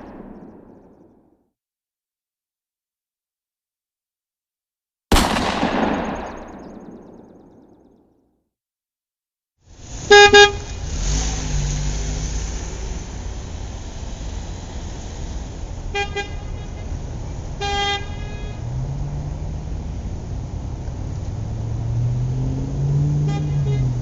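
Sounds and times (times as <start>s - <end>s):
low rumble of traffic: 0.0s - 1.2s, 9.7s - 24.0s
car horn honking: 10.0s - 11.0s, 15.9s - 18.8s, 23.1s - 24.0s.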